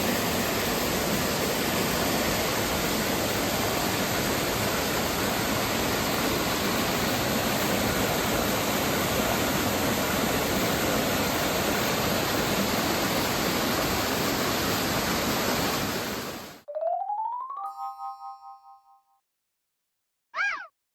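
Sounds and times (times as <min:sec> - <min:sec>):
waterfall rushing: 0:00.0 - 0:16.6
ringing chime: 0:16.7 - 0:19.2.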